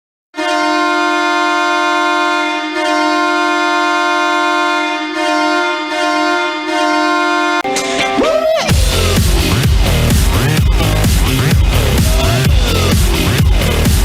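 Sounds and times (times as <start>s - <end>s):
goal horn blowing: 0.4s - 8.9s.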